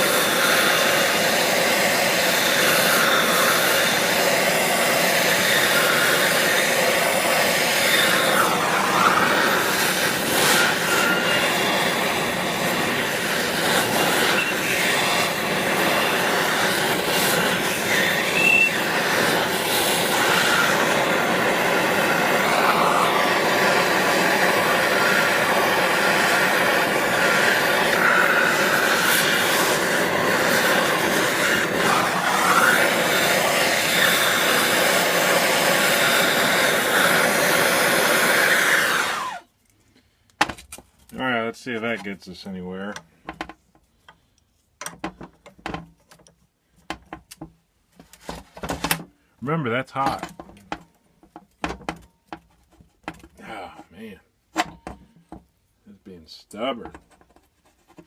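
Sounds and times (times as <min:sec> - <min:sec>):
gas torch flame hissing: 0:00.0 - 0:39.5
faint wavering whistle-like tones: 0:18.3 - 0:18.8.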